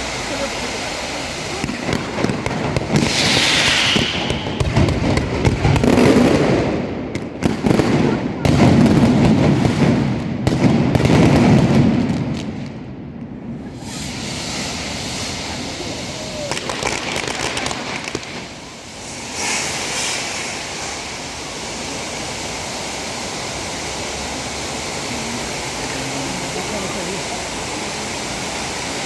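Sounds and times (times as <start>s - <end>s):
steady hiss: 0.0s - 10.3s, 13.5s - 29.0s
firework bangs: 0.0s - 23.3s
firework crackles: 0.0s - 29.0s.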